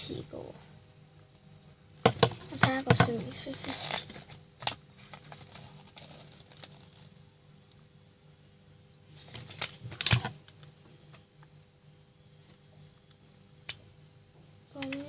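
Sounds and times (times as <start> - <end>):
paper rustling: 3.6 - 7.1, 9.2 - 10.3.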